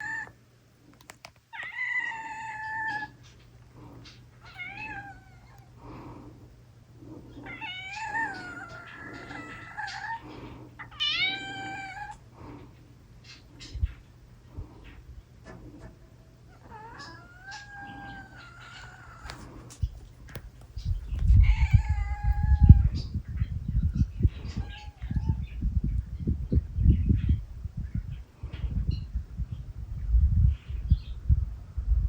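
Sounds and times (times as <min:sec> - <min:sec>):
cat meowing: 0:00.0 - 0:00.3, 0:01.5 - 0:03.2, 0:04.4 - 0:05.8, 0:07.4 - 0:12.2, 0:16.5 - 0:19.6, 0:21.1 - 0:23.4.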